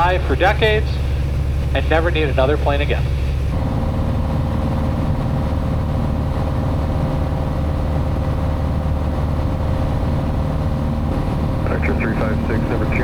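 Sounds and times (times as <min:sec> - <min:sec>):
airplane engine drone in cabin: 0:00.0 - 0:13.0.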